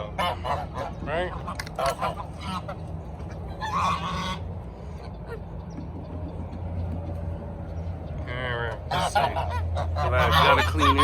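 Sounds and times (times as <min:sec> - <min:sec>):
geese honking: 0:00.0 - 0:05.5, 0:08.2 - 0:11.0
steady low hum: 0:00.0 - 0:11.0.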